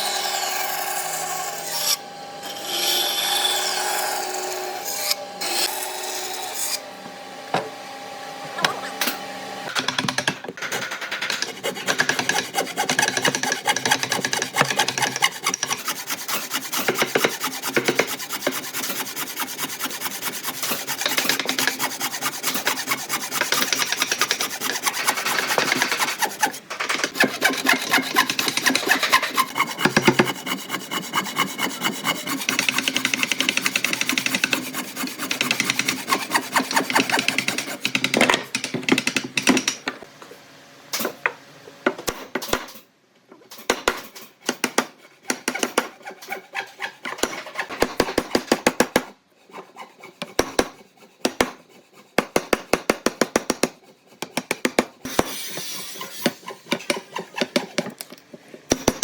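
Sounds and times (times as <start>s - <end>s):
hand tool rasping wood: 9.8s - 38.2s, 44.5s - 58.0s.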